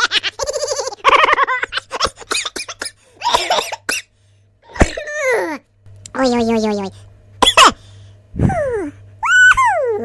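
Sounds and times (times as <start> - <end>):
person laughing: 0.0 - 2.6.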